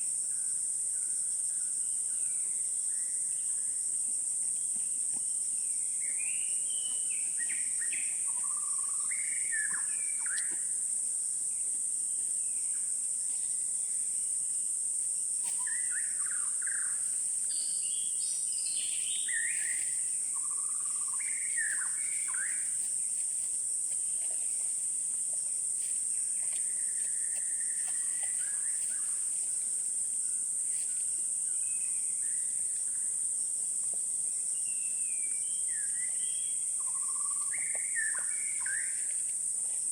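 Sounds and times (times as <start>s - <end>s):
insects droning: 0.0s - 39.9s
bird calls and chirps: 6.0s - 10.7s, 15.6s - 22.8s, 34.6s - 39.2s.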